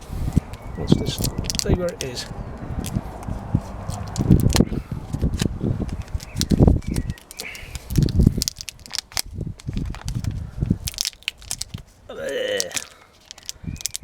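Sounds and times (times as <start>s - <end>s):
low thumps: 0.0s - 6.9s
sticky string crackling: 0.0s - 14.0s.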